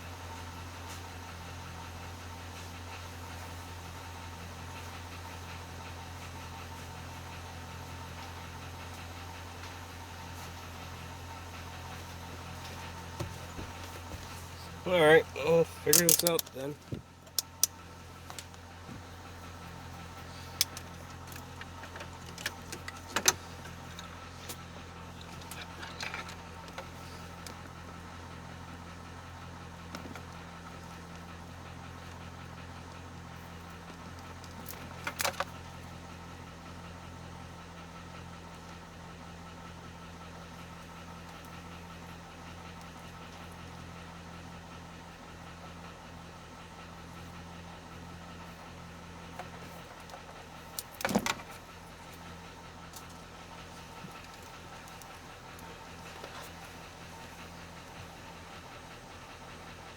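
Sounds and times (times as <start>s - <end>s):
steady low hum: 0.0s - 59.9s
sharp clicks and light rattles: 12.7s - 27.9s, 29.3s - 35.9s, 46.6s - 59.9s.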